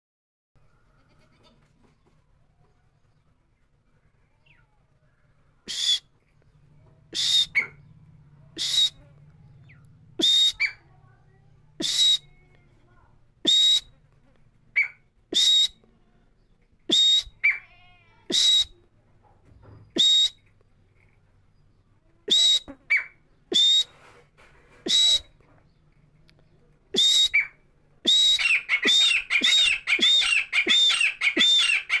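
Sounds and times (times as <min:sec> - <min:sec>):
francolin calling: 0:27.0 - 0:32.0.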